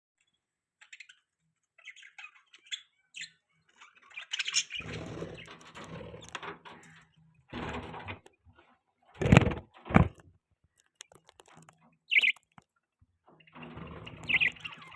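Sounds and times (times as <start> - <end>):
budgerigars chirping: 0.8 - 5.6, 12.1 - 12.4, 14.1 - 14.9
rustling noise: 7.5 - 10.3.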